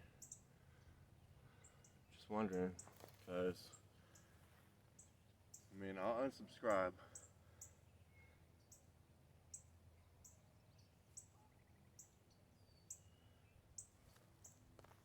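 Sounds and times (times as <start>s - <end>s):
faint bird whistles: 7.2s - 8.5s
faint high chirp: 7.2s - 8.9s, 9.5s - 14.6s.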